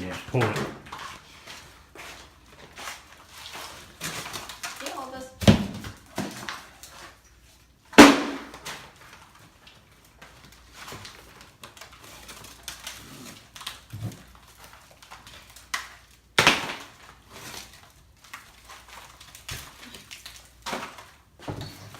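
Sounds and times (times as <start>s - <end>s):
wall being broken apart: 0.0s - 21.9s
loud bang: 8.0s - 8.6s.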